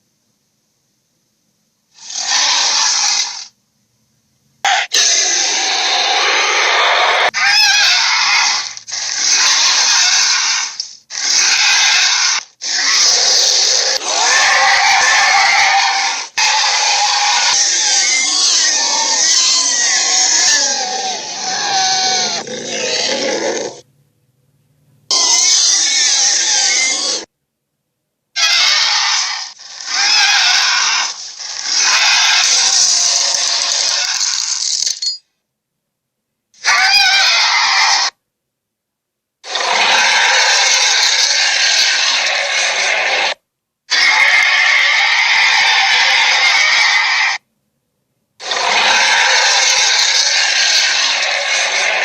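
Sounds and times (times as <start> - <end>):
gorilla calling: 4.7 - 23.8, 36.6 - 38.2.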